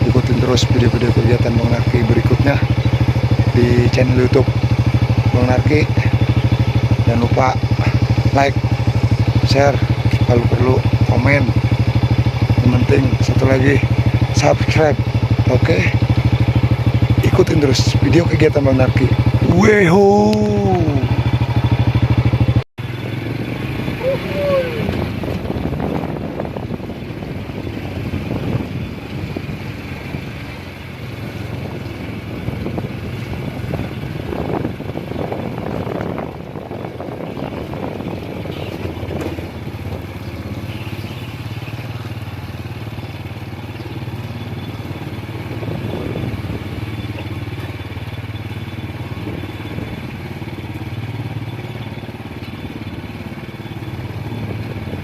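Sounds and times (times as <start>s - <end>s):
small motorcycle engine running: 0.0s - 55.0s.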